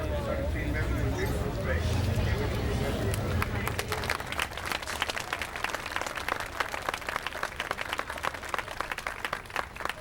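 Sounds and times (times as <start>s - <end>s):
audience applauding: 3.1s - 10.0s.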